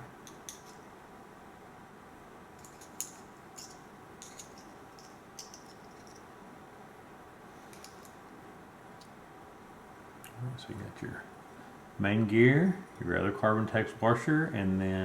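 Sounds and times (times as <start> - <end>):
small metal parts clicking: 2.6 - 6.3, 7.7 - 8.2.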